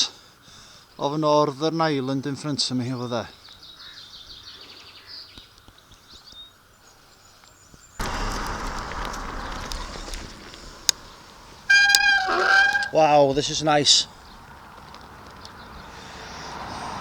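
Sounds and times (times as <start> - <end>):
wind noise on microphone: 8.0 - 14.4.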